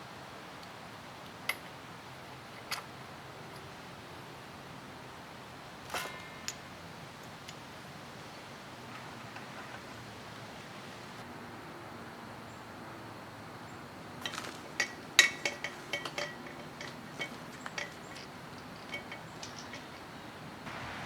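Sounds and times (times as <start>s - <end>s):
small metal parts clinking: 5.9s - 7.7s, 14.2s - 20.6s.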